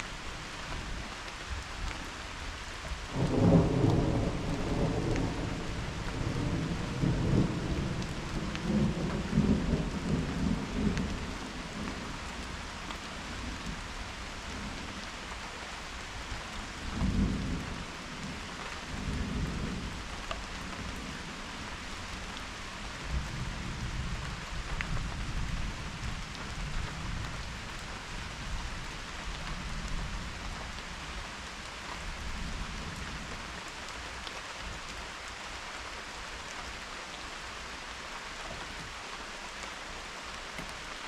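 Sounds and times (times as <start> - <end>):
steady rain falling: 0.0 - 41.0
rolling thunder: 3.1 - 12.0.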